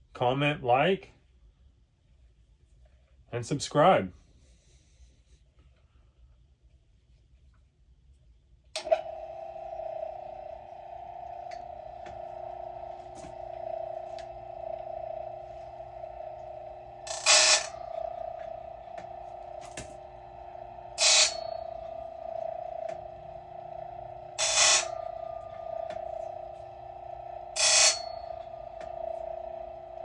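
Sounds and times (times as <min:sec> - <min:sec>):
grinder motor humming: 0:08.8 - 0:30.0
grinding stone rasping on chain: 0:15.6 - 0:30.0.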